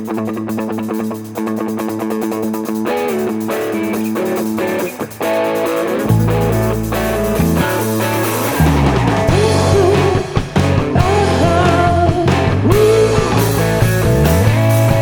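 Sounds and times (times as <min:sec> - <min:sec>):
rock band playing instrumental: 0:00.0 - 0:15.0
bending sliding melody notes: 0:06.0 - 0:09.5
sliding bass notes: 0:06.0 - 0:15.0.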